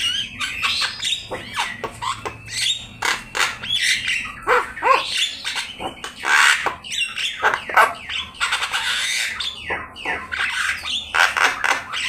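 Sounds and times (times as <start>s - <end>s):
myna squawks and whistles: 0.0s - 8.3s.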